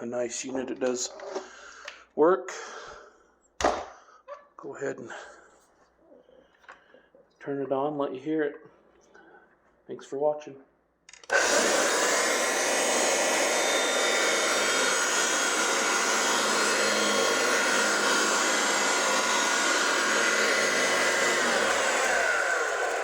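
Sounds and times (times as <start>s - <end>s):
vacuum cleaner running: 11.2s - 23.0s.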